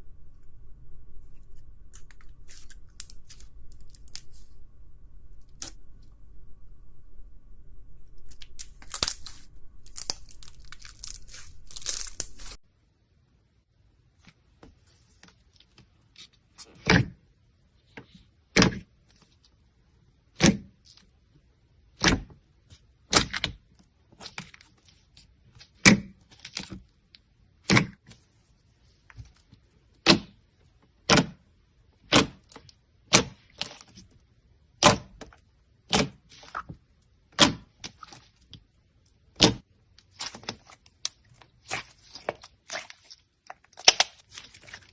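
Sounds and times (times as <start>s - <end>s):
slime crackling: 8.2s - 12.6s, 39.2s - 44.9s.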